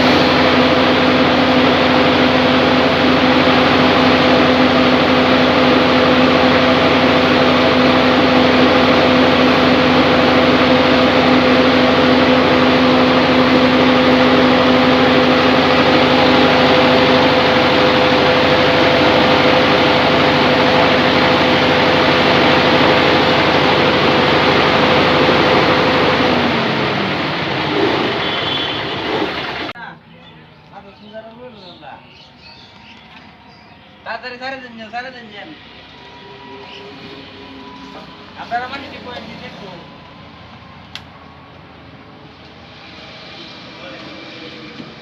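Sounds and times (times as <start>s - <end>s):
band saw machine running: 0.0s - 29.8s, 34.0s - 45.0s
high hum: 0.0s - 29.8s
low hum: 0.0s - 29.8s.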